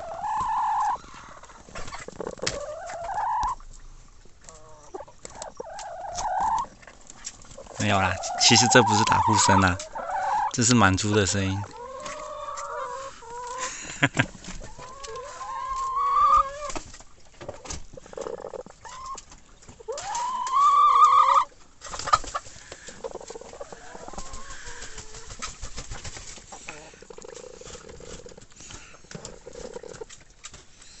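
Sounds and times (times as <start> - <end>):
chicken calling: 0.0 - 3.6, 4.4 - 6.8, 7.6 - 16.8, 19.8 - 25.5.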